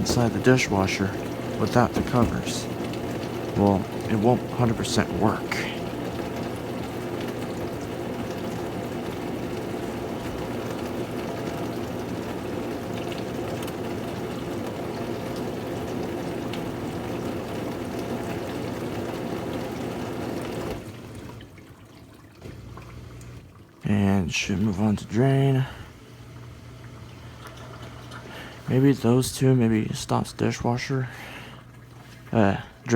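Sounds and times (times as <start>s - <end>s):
water spraying in dishwasher: 0.0s - 21.7s.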